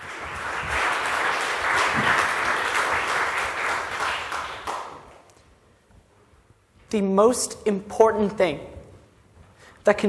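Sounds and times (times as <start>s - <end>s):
audience applauding: 0.0s - 5.2s.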